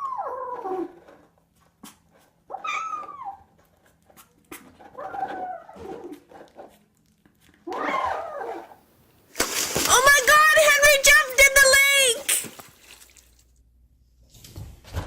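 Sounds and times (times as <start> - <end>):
pet animal whining: 2.5 - 3.9, 4.6 - 6.4.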